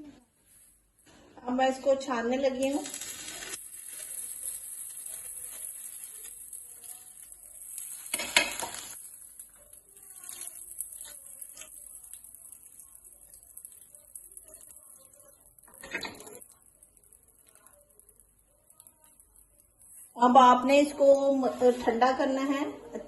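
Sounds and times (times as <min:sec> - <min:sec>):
faint oil sizzle: 0:00.0 - 0:22.5
metal utensils clinking and scraping: 0:02.6 - 0:19.4.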